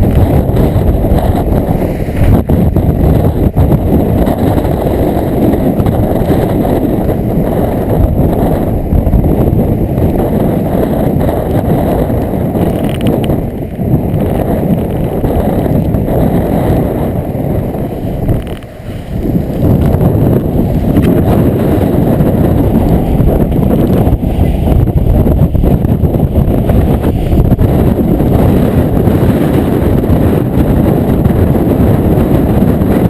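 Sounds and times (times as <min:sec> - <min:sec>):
strong wind buffeting microphone: 0:00.0 - 0:33.0.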